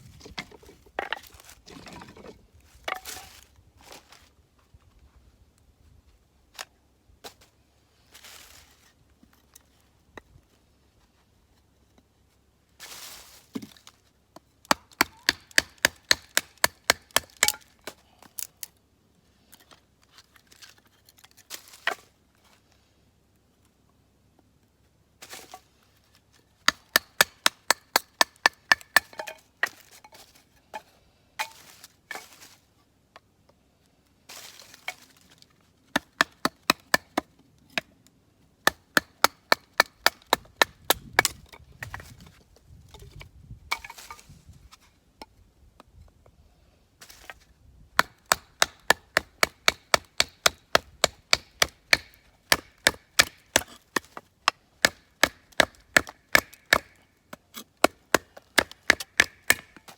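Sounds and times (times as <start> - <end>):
chopping strikes on wood: 14.7 - 18.0, 26.6 - 29.8, 35.9 - 37.3, 38.6 - 42.0, 48.0 - 57.0, 57.8 - 59.9.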